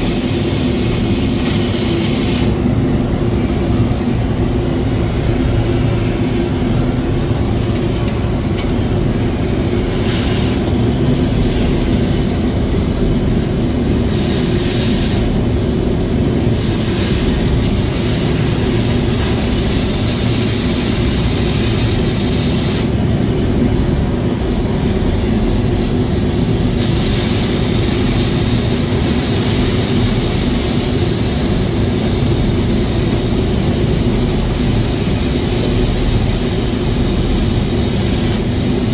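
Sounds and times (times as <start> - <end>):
hiss: 0.0 - 2.6, 9.8 - 23.0, 26.0 - 38.9
heavy engine running steadily: 0.0 - 38.9.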